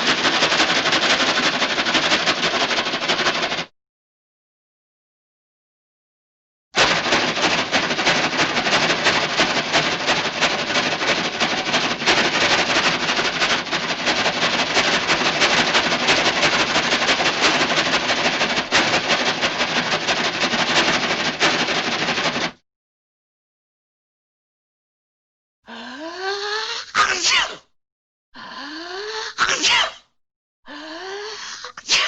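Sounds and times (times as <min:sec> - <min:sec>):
rapid sharp cracks: 0:00.0 - 0:03.7, 0:06.8 - 0:22.6.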